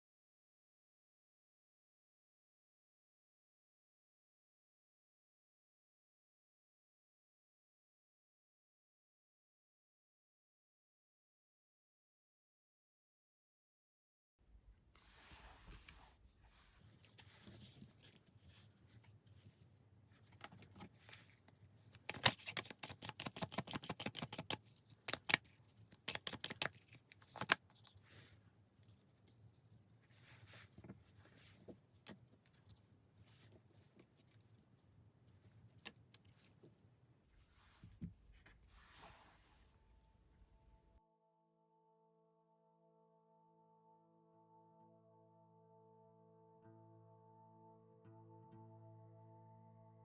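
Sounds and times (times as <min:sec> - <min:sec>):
cards being shuffled: 0:20.3 - 0:28.1.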